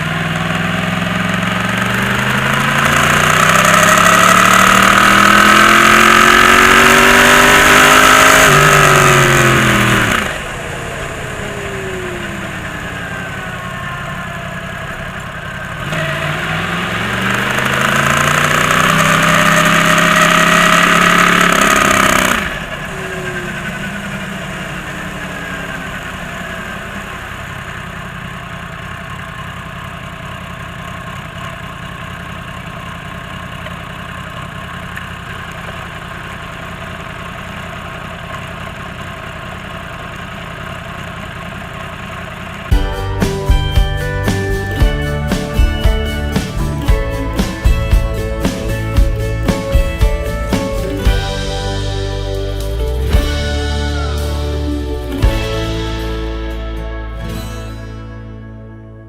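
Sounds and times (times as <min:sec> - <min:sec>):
motorcycle engine revving hard: 0:00.0 - 0:28.1, 0:40.6 - 0:56.3.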